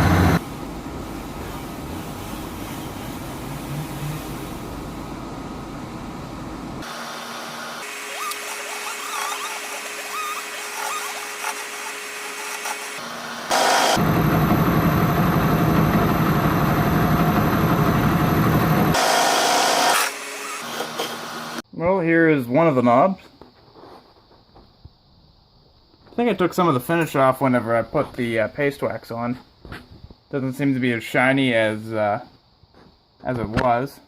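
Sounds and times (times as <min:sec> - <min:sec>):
wood lathe turning wood: 0:06.8 - 0:21.6.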